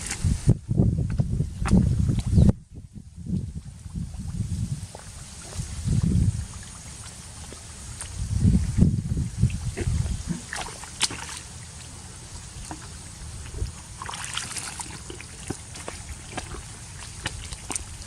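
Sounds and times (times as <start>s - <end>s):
water sloshing and splashing: 4.9s - 18.0s.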